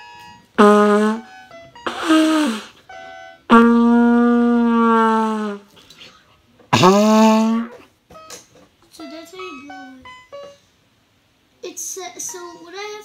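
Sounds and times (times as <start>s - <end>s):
trumpet notes: 0.5s - 5.7s.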